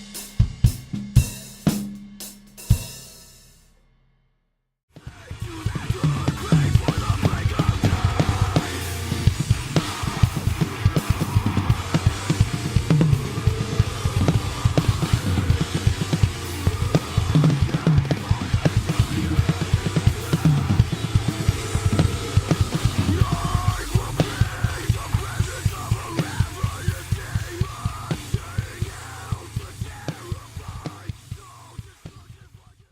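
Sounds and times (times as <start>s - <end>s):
bass drum strokes: 5.4s - 32.3s
cymbals: 6.3s - 32.2s
bending pitched tone: 7.8s - 29.4s.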